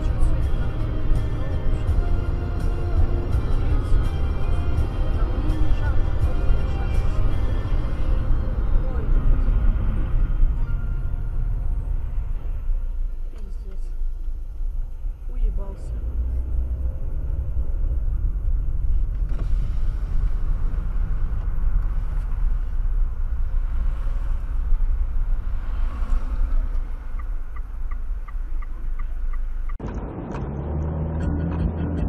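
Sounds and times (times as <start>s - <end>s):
music: 0.0s - 9.3s
car rumble: 0.0s - 32.0s.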